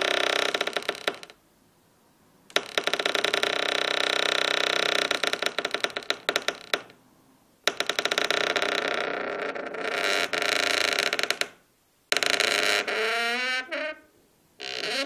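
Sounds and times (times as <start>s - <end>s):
door hinges creaking: 0.0s - 1.4s, 2.5s - 7.0s, 7.6s - 15.0s.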